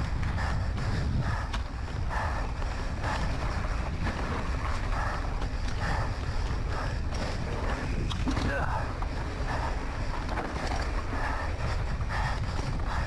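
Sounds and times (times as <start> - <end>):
wind buffeting microphone: 0.0 - 13.0
heavy breathing: 11.1 - 13.0.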